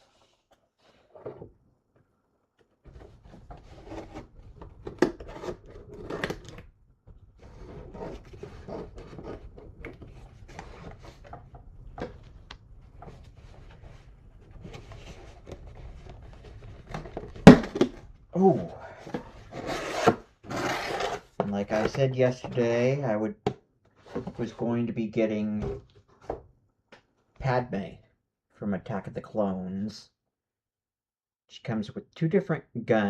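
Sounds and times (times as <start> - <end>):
package rustling and scraping: 2.9 - 22.7.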